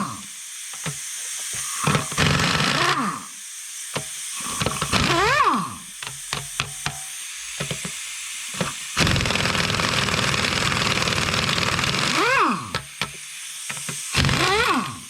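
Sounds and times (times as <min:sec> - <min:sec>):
impact wrench hammering: 0:06.0 - 0:07.9, 0:08.6 - 0:13.2, 0:13.8 - 0:14.9.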